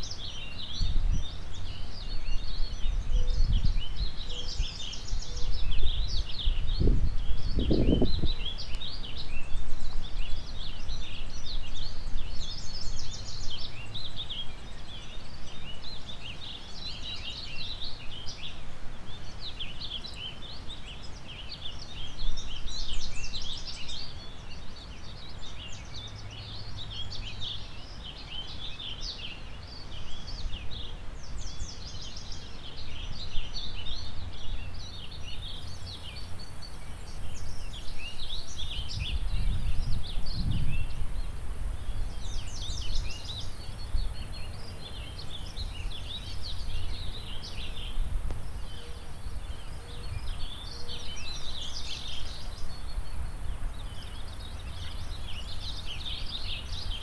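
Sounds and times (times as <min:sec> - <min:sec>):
songbirds chirping and trilling: 0:00.0 - 0:57.0
wind rumble: 0:05.8 - 0:08.5, 0:38.5 - 0:43.2.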